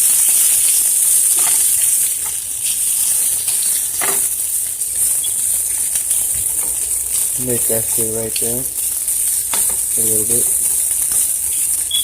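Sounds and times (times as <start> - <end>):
food sizzling in a frying pan: 0.0 - 12.0.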